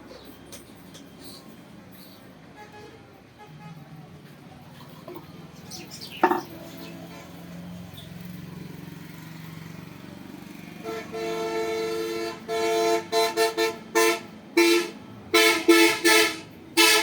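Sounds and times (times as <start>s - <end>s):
vehicle horn honking: 10.8s - 17.0s.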